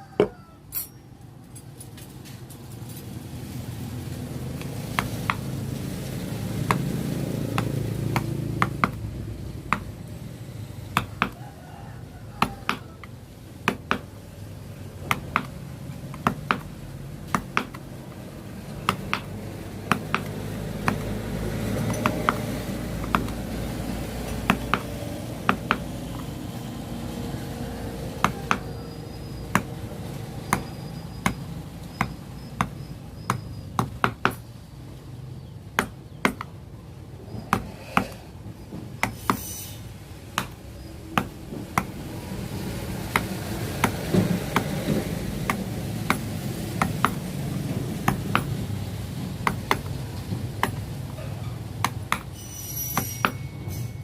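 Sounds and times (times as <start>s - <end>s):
mallet tapping chisel into wood: 7.6s - 9.0s, 9.7s - 9.9s, 11.0s - 11.4s, 12.4s - 12.9s, 13.6s - 14.1s, 15.0s - 16.7s, 17.3s - 17.8s, 18.9s - 19.3s, 19.9s - 21.1s, 21.8s - 23.4s, 24.5s - 26.3s, 28.2s - 28.7s, 32.0s - 34.4s, 35.8s - 36.5s, 39.0s - 39.4s, 40.4s - 40.6s, 41.2s - 42.0s, 43.1s - 47.2s, 48.0s - 48.6s, 49.4s - 50.0s, 50.6s - 50.9s, 51.8s - 52.3s.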